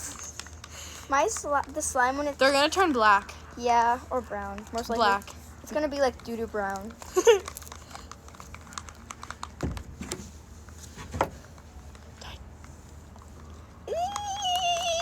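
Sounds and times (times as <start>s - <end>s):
soft thumps: 9.6s - 11.6s.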